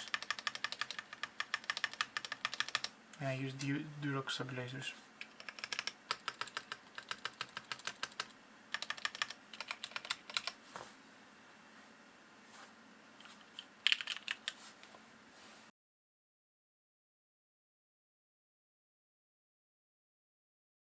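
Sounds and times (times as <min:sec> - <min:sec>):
mechanical keyboard typing: 0:00.0 - 0:02.9, 0:05.2 - 0:10.6, 0:13.6 - 0:14.6.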